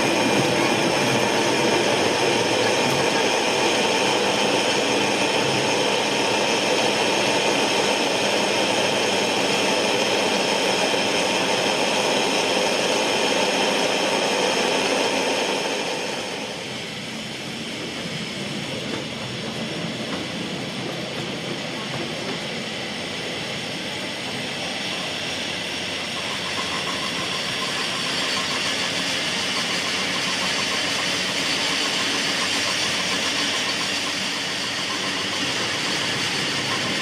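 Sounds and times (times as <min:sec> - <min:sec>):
rail vehicle running noise: 0:00.0 - 0:37.0.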